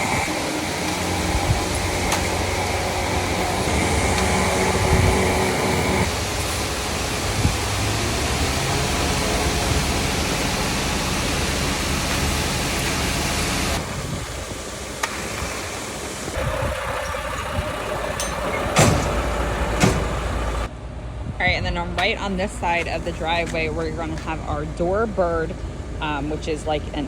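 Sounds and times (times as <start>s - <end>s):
steady rushing noise: 0.0s - 17.8s
engine running: 0.0s - 27.0s
steady hum: 0.0s - 27.0s.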